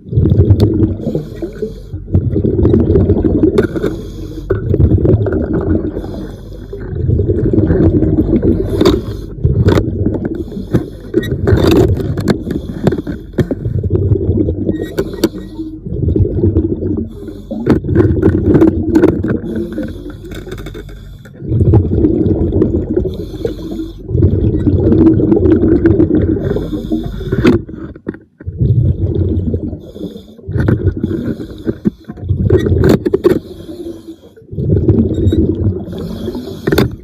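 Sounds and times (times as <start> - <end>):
diver exhaling bubbles: 0.0 - 37.0
sharp clicks and scrapes: 3.5 - 5.4, 8.6 - 13.8, 14.8 - 15.7, 17.5 - 21.4, 26.6 - 28.5, 30.5 - 34.0, 35.0 - 37.0.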